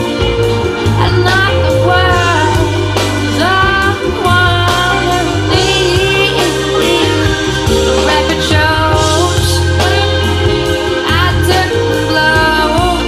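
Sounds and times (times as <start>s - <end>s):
music through loudspeakers: 0.0s - 13.0s.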